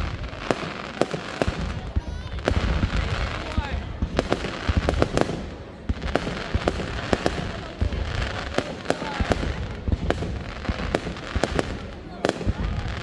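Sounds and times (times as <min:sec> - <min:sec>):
fireworks bangs: 0:00.0 - 0:13.0
fireworks crackling: 0:00.0 - 0:13.0.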